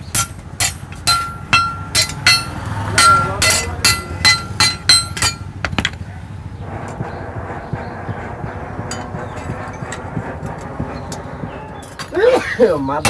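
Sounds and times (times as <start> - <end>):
hammer ringing on anvil: 0.1 - 5.5.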